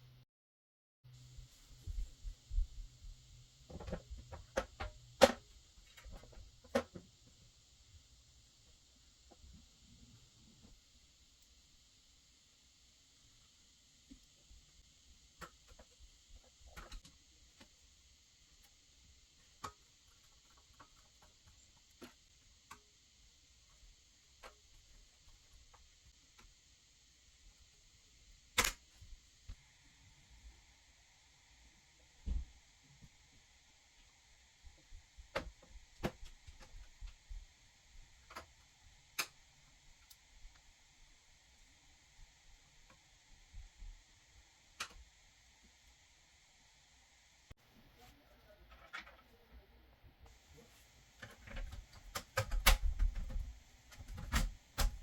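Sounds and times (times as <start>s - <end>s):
hands handling computer hardware: 51.2s - 55.0s.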